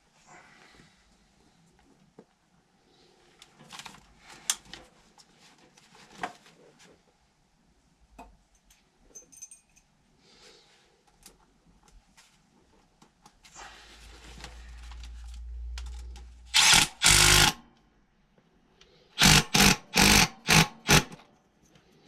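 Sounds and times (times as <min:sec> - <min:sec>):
hand tools clinking: 0:08.6 - 0:09.9.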